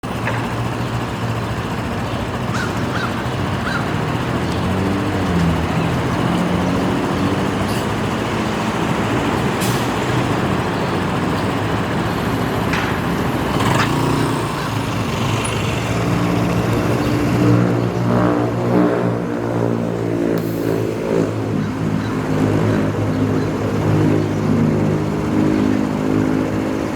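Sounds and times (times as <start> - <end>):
bus engine running: 0.0 - 26.9
bird calling: 2.1 - 4.8, 21.5 - 23.6.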